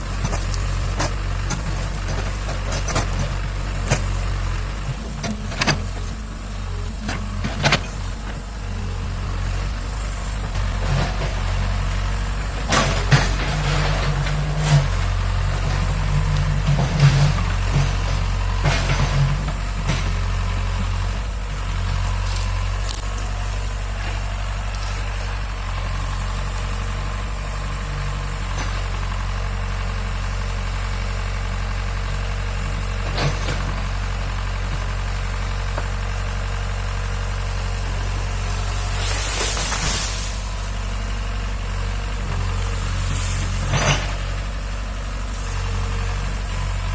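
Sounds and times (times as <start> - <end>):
diesel engine running: 0.0 - 46.9
brief hiss: 38.8 - 40.7.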